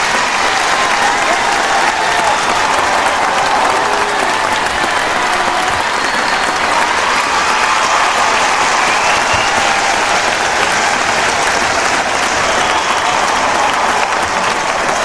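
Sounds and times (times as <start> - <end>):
crowd applauding: 0.0 - 15.0.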